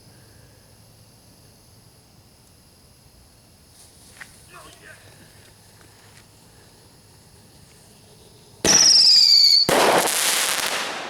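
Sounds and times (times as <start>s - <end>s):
firework burst: 8.6s - 11.0s
firework whistle: 8.6s - 11.0s.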